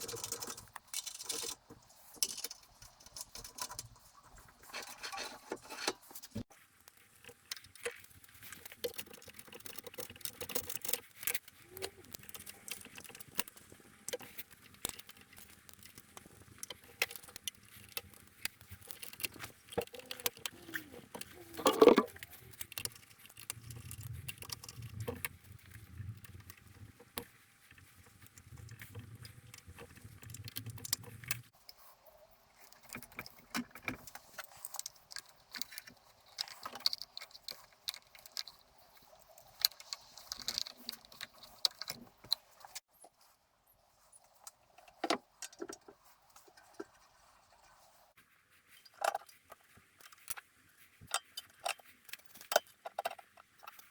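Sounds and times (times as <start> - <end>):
metal parts clicking and tapping: 0.0 - 31.5, 32.6 - 42.8.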